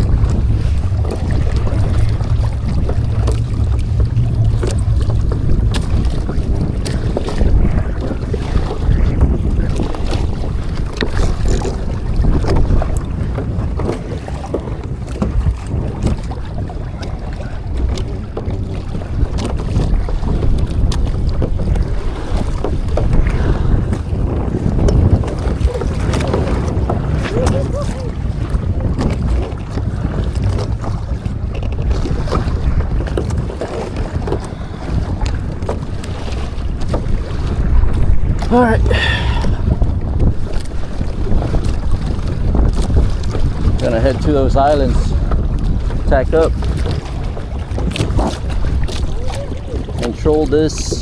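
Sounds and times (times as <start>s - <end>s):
water lapping against hull: 0.0s - 51.0s
wind buffeting microphone: 0.0s - 51.0s
small ticks and knocks: 31.5s - 32.0s.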